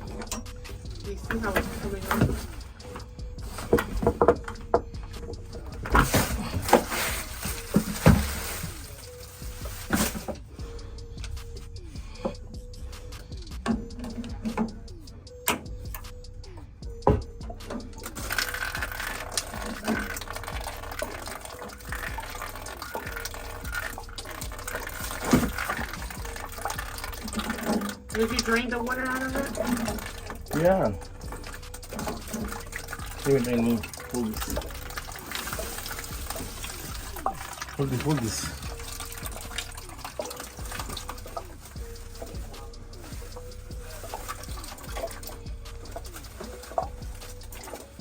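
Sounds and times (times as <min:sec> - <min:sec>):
water gushing from tank: 0:05.7 - 0:10.4, 0:18.0 - 0:48.0.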